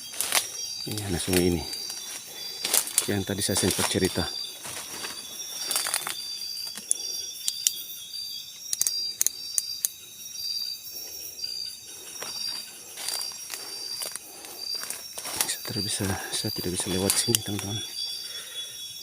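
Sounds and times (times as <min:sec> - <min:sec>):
high-pitched insect drone: 0:00.0 - 0:19.0
insects chirping: 0:00.0 - 0:19.0
sharp clicks: 0:06.6 - 0:07.8, 0:08.6 - 0:10.0.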